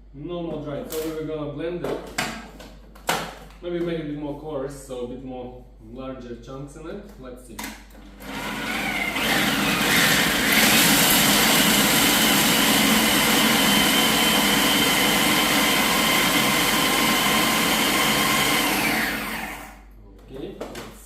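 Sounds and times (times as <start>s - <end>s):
blender grinding nuts: 8.1s - 19.9s.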